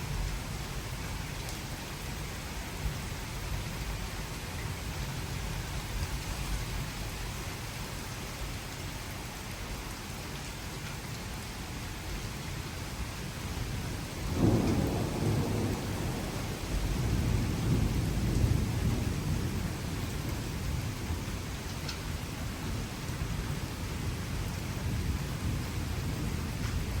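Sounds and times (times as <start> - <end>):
steady rain: 0.0 - 27.0
thunder clap and rumble: 13.6 - 22.0, 22.6 - 27.0.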